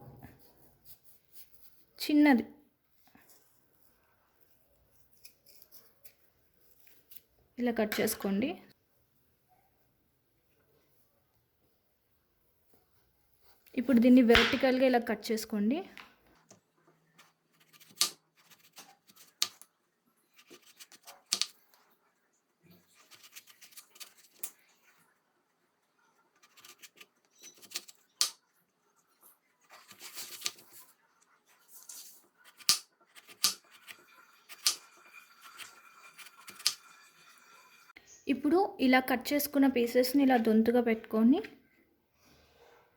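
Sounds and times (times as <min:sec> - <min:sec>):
knife slicing through potato: 0:29.7 - 0:30.9, 0:31.8 - 0:36.8.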